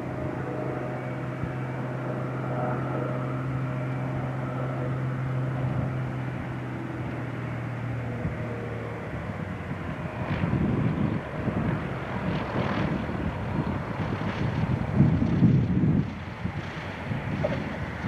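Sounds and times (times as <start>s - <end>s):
propeller aircraft engine humming: 0.0s - 18.0s.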